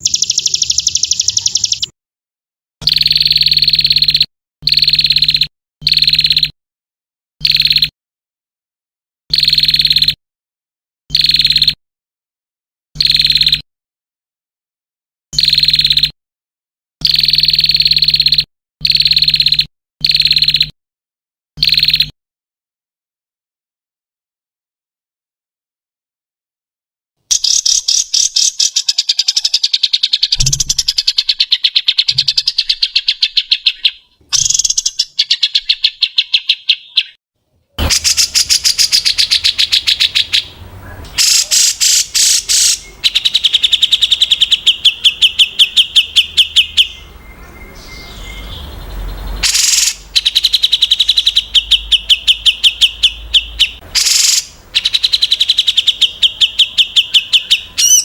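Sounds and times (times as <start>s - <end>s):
songbird singing: 0.0s - 2.0s, 2.8s - 6.6s, 7.4s - 7.9s, 9.3s - 10.2s, 11.1s - 11.8s, 13.0s - 13.6s, 15.4s - 16.1s, 17.0s - 20.7s, 21.6s - 22.1s, 27.3s - 37.2s, 37.8s - 58.0s.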